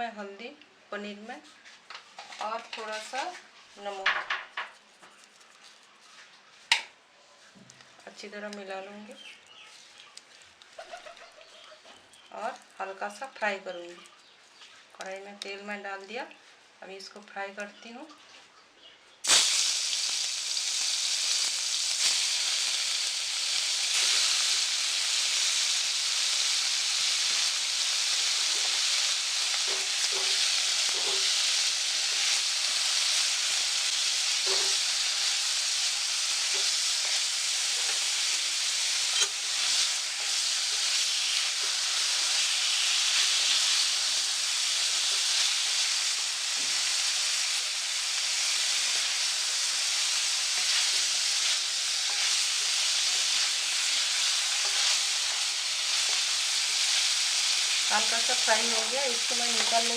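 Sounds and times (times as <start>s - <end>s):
cheese sizzling in hot oil: 19.2s - 59.9s.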